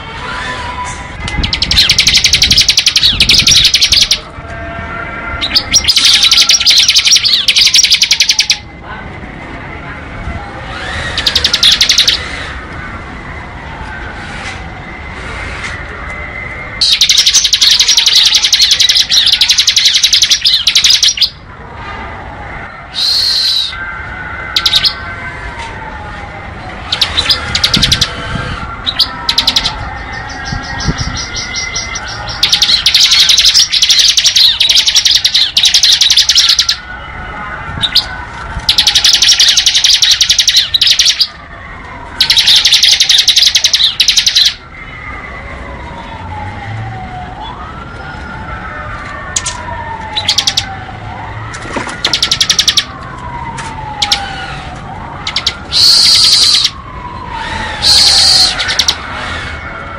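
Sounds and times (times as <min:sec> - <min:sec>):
bird high-pitched trills: 0:01.3 - 0:04.3, 0:05.4 - 0:08.6, 0:10.8 - 0:12.4, 0:16.8 - 0:21.4, 0:26.9 - 0:36.8, 0:38.7 - 0:41.3, 0:42.2 - 0:44.6, 0:52.0 - 0:52.9, 0:55.3 - 0:56.8, 0:57.5 - 0:59.0
lower falling whistle: 0:22.9 - 0:24.0, 0:55.3 - 0:59.0.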